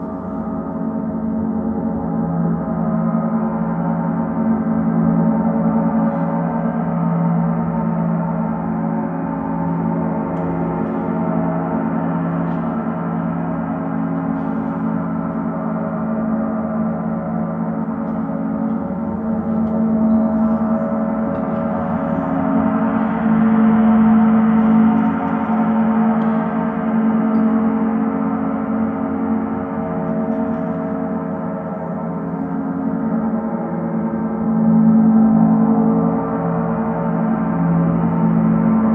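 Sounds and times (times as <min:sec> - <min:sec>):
gong ringing: 0:19.2 - 0:22.3.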